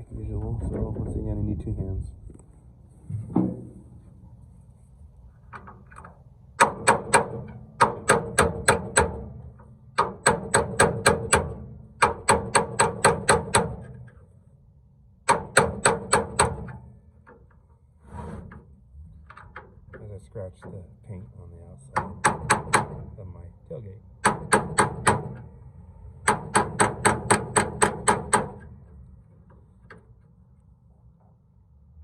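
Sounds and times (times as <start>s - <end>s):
hammer striking metal: 26.2s - 28.7s.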